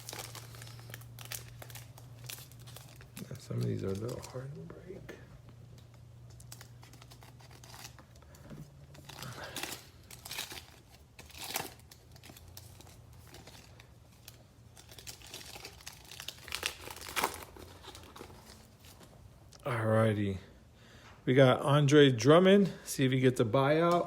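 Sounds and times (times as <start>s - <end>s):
card pack wrapper crinkling and tearing: 0.0s - 5.0s, 5.7s - 19.1s.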